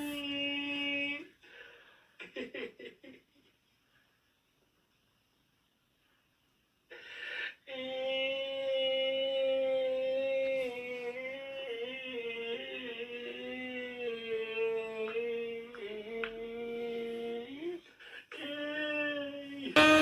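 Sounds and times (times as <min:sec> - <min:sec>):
person singing long notes: 0:19.8 - 0:20.0.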